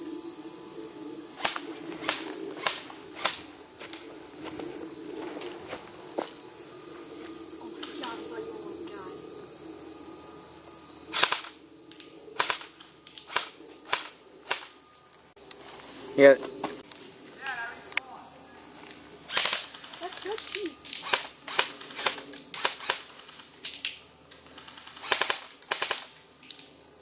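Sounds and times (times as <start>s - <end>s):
crickets chirring: 0.0s - 27.0s
airsoft gun shots: 11.2s - 11.5s, 12.4s - 12.7s, 13.3s - 14.7s, 25.0s - 26.1s.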